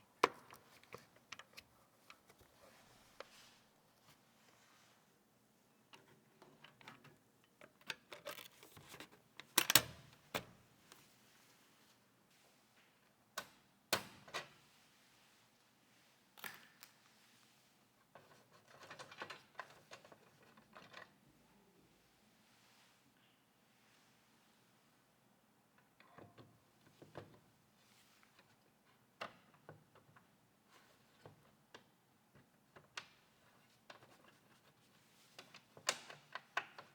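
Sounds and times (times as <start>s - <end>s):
computer parts clicking and rustling: 0.1s - 3.3s, 6.0s - 10.6s, 18.2s - 21.2s.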